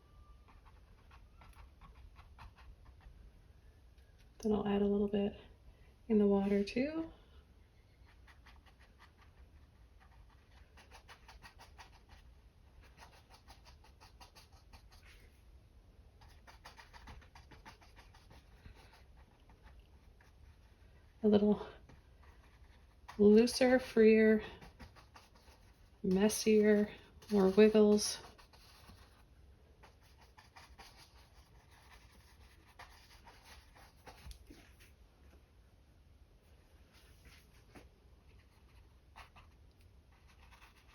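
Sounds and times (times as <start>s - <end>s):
brush tapping and scratching canvas: 0.5s - 3.2s, 8.0s - 15.4s, 16.2s - 21.1s, 21.8s - 34.9s, 36.9s - 40.9s.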